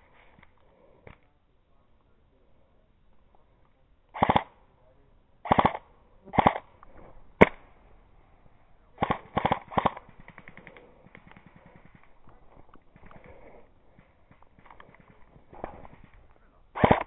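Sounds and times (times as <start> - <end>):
airsoft gun bursts: 4.2 - 4.5, 5.4 - 6.7, 9.0 - 12.2, 16.8 - 17.0
sharp crack: 4.2 - 4.6, 5.4 - 7.8, 8.9 - 17.0.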